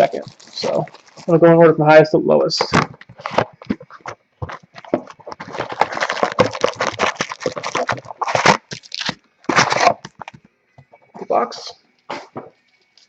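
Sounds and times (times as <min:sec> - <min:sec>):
card packaging tearing and crinkling: 0:00.0 - 0:01.4, 0:02.6 - 0:10.4.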